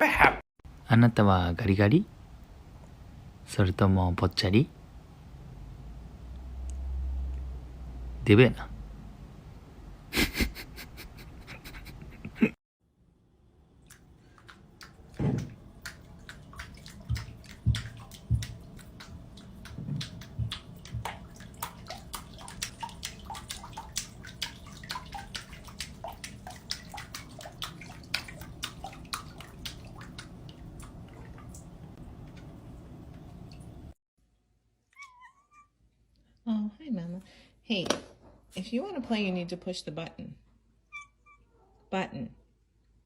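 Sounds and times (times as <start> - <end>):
water sloshing and dripping: 13.7 - 34.0
low water splashes: 13.8 - 34.0.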